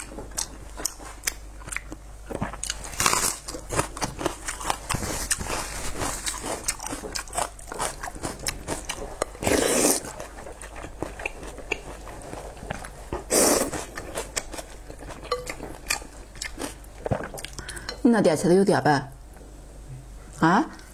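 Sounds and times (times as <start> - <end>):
person chewing: 0.0 - 18.0
noodle slurps: 13.2 - 13.9.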